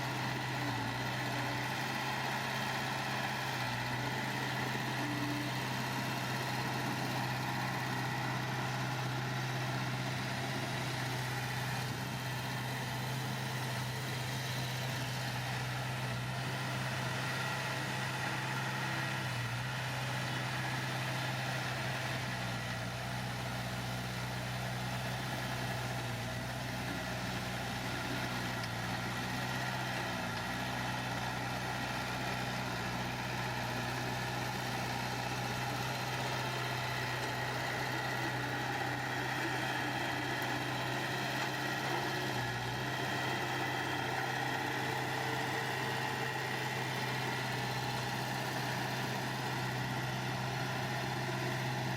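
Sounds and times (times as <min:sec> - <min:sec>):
diesel engine idling: 0:00.0 - 0:20.8, 0:21.7 - 0:51.9.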